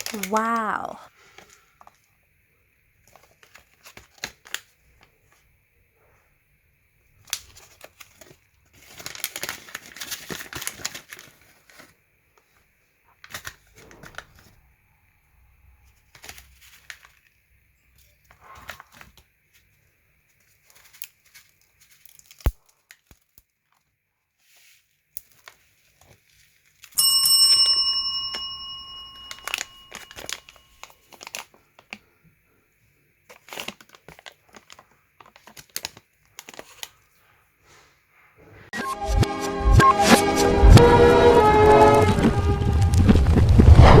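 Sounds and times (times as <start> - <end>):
plastic packaging crinkling: 0.0 - 2.1, 3.0 - 5.5, 7.2 - 12.5, 13.1 - 14.6, 15.8 - 17.4, 18.2 - 27.0, 27.7 - 32.2, 33.2 - 37.2
bright bell-like ring: 27.0 - 30.8.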